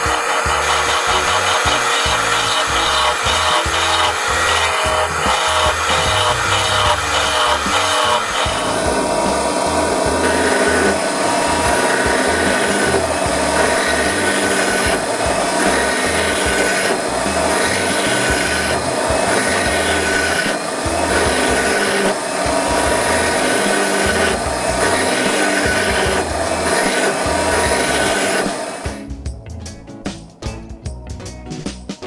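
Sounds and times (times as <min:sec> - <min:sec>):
hand tool scraping on wood: 0:00.0 - 0:08.9
background music: 0:00.0 - 0:32.0.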